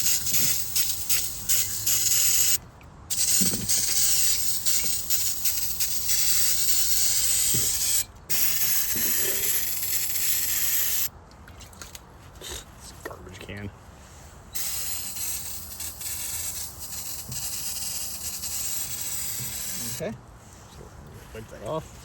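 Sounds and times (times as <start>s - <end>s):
aerosol can spraying: 0.0s - 11.1s, 14.6s - 20.0s.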